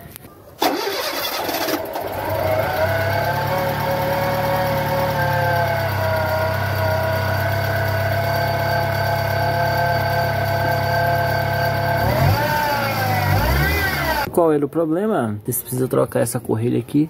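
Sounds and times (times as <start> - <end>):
car engine idling: 0.6 - 14.3.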